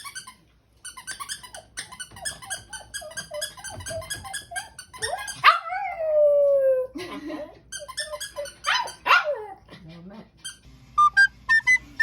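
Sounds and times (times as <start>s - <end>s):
small pet yelping: 1.6s - 6.0s, 7.8s - 9.6s.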